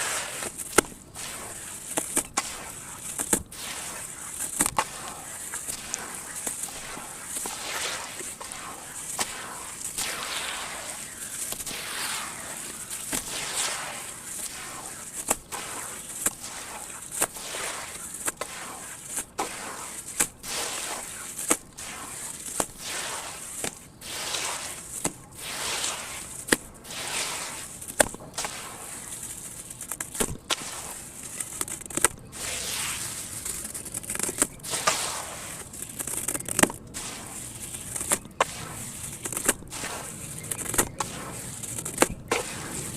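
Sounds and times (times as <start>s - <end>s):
chunks crumbling in water: 0.0s - 42.9s.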